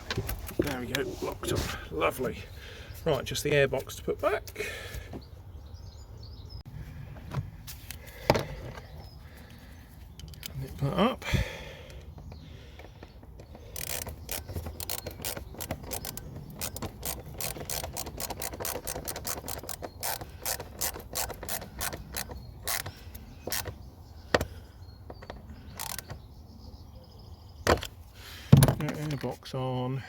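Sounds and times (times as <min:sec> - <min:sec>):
hand ratchet clicking: 0:13.3 - 0:23.8, 0:25.7 - 0:26.2.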